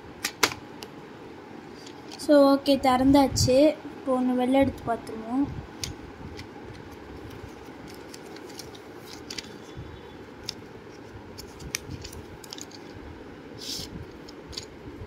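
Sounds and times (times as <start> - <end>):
low background hum: 0.0 - 15.0
pencil pack clicks and scraping: 5.8 - 9.8, 10.4 - 13.0, 13.6 - 14.7.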